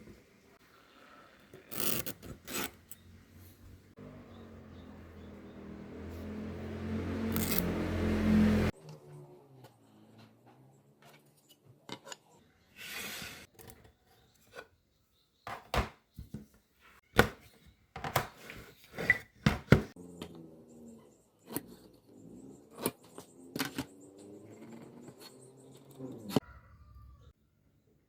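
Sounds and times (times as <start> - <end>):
knocks on wood and metal: 15.5 - 16.4, 17.2 - 18.3.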